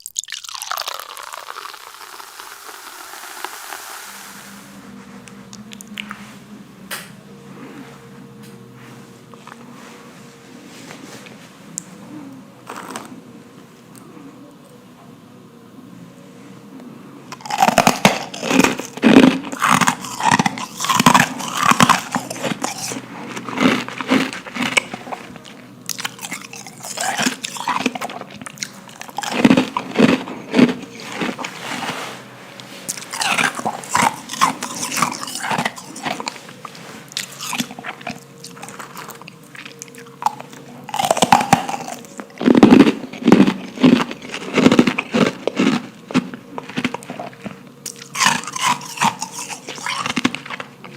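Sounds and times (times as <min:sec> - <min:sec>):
soft chewing: 0:04.8 - 0:06.4, 0:16.8 - 0:50.9
crunching ice: 0:17.3 - 0:50.9.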